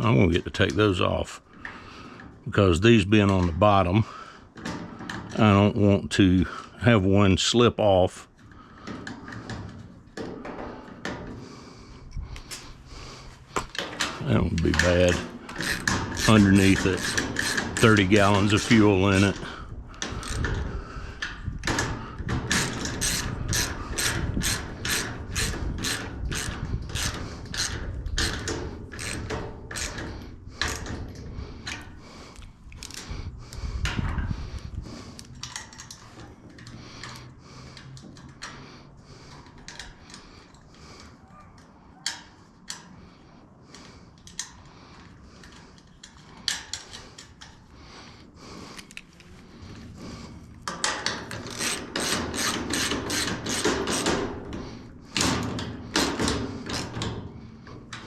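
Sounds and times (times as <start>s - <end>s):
ratchet wrench clicking: 15.1s - 18.8s, 20.1s - 20.5s, 22.5s - 30.0s, 50.8s - 54.2s.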